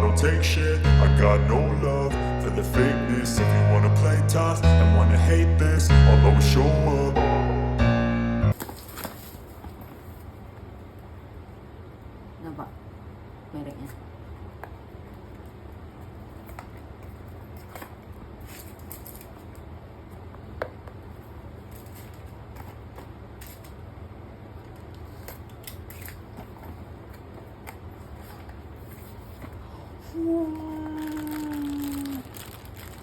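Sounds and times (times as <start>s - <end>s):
steady low hum: 0.0s - 8.6s
small hard objects clicking: 31.0s - 33.0s.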